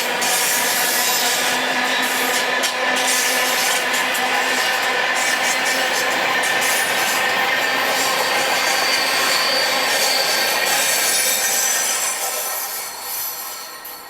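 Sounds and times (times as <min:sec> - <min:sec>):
wheels grinding screech: 0:06.6 - 0:14.0.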